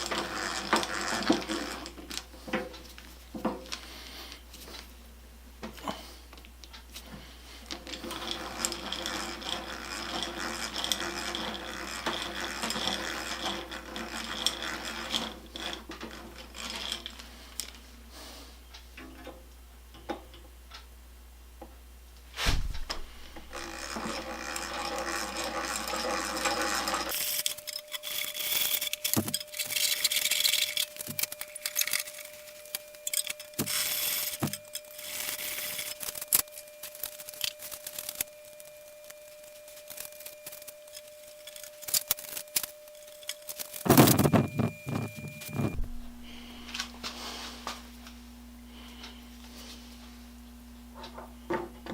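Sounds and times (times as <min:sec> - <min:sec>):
tool grinding and whirring: 0:00.0 - 0:02.2, 0:07.8 - 0:17.7, 0:23.2 - 0:46.8.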